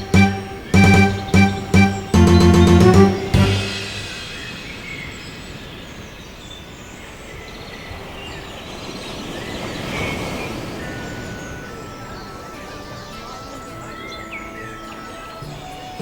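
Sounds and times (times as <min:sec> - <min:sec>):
wind rumble and hiss: 0:04.0 - 0:16.0.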